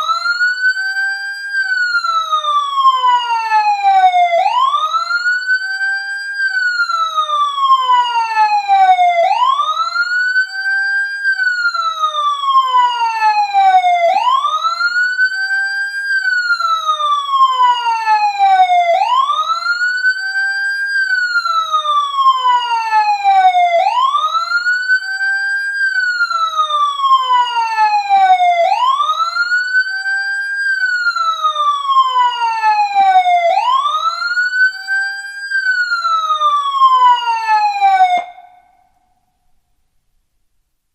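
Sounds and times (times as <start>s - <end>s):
emergency siren wailing: 0.0s - 39.0s.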